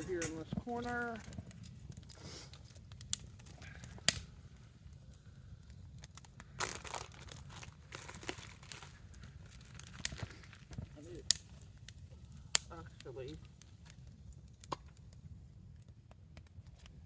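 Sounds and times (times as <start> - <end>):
packaging crinkling and rustling: 6.1 - 11.8.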